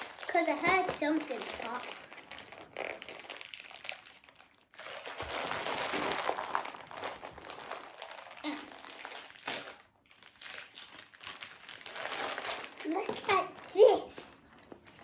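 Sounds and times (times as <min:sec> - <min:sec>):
packaging crinkling and rustling: 0:00.0 - 0:15.0.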